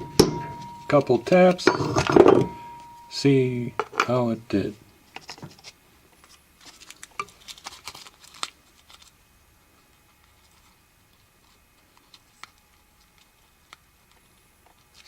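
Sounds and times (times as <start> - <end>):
small metal parts rattling: 0.0 - 3.2.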